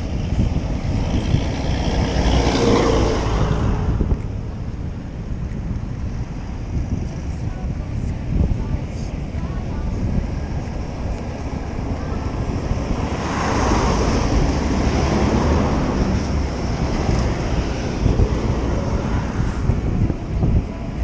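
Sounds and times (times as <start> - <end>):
motor vehicle passing: 0.0 - 7.1, 10.5 - 20.1
wind rushing over microphone: 0.0 - 21.0.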